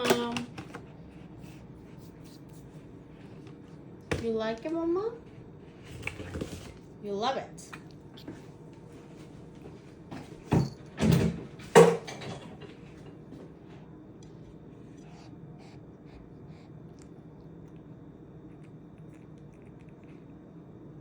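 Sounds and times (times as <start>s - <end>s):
cat licking and chewing: 14.1s - 21.0s.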